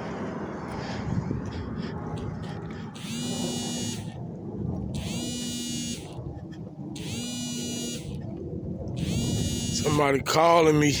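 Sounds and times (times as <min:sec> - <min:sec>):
mobile phone buzzing: 0:02.4 - 0:04.2, 0:05.0 - 0:06.2, 0:07.0 - 0:08.2, 0:09.0 - 0:10.0.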